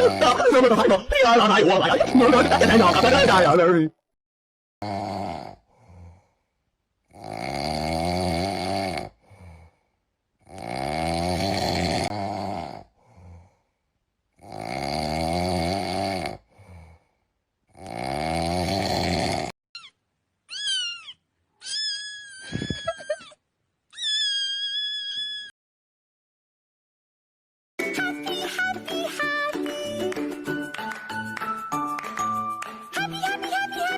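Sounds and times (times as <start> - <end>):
cat meowing: 19.8 - 22.9, 23.9 - 25.5
cat yowling: 20.5 - 23.3, 23.9 - 25.5.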